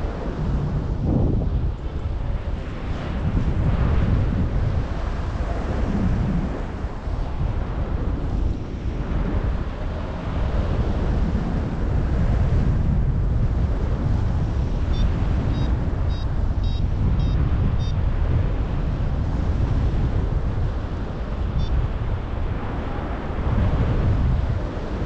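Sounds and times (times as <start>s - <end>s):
wind buffeting microphone: 0.0s - 25.0s
short high electronic beeps: 15.0s - 18.0s.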